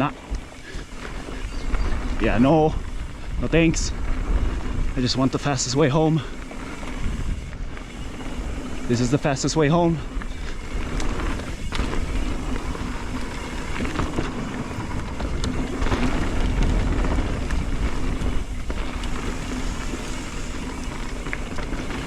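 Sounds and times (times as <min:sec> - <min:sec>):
bike tyre noise on dirt: 0:00.0 - 0:22.0
wind rush on microphone: 0:00.0 - 0:22.0
bike knocks and rattles: 0:09.8 - 0:22.0.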